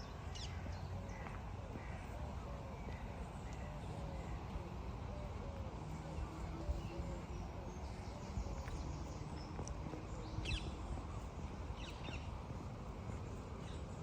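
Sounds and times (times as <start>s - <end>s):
outdoor background noise: 0.0s - 14.0s.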